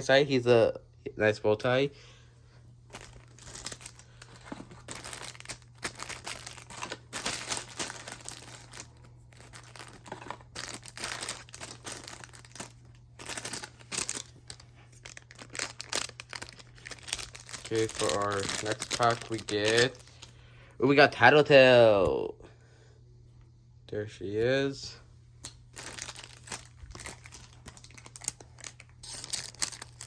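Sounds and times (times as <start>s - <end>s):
faint low hum: 0.0s - 30.0s
foil wrappers crinkling and tearing: 2.9s - 20.3s, 25.6s - 30.0s.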